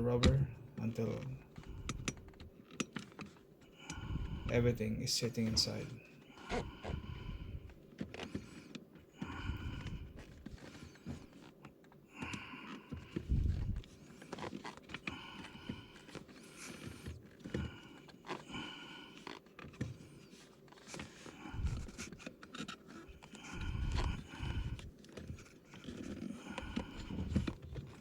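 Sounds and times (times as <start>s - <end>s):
rubber squeaks and creaks: 6.3s - 18.5s, 19.1s - 28.0s.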